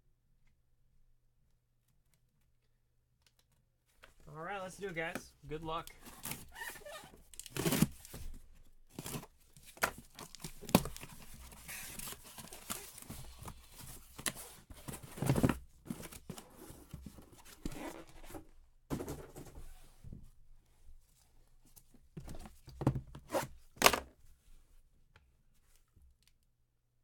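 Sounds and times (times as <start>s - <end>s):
plastic packaging tearing and crinkling: 6.0s - 8.2s.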